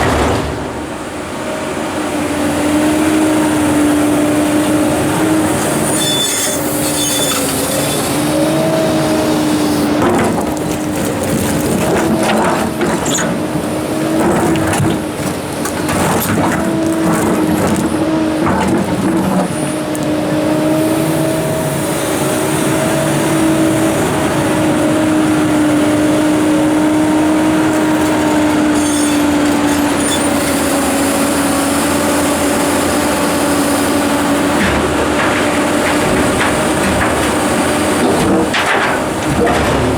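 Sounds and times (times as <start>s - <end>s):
excavator whining under load: 0.0s - 39.9s
rock clanking against steel bucket: 9.9s - 19.6s, 34.2s - 39.9s.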